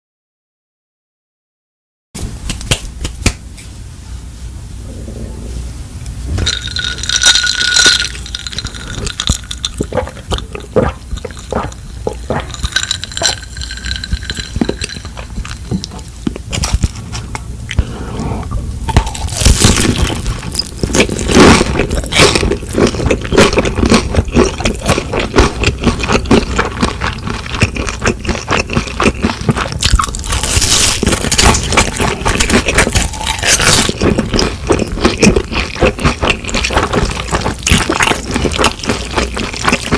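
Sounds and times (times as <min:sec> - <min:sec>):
utensils scraping a bowl: 0:06.4 - 0:17.3.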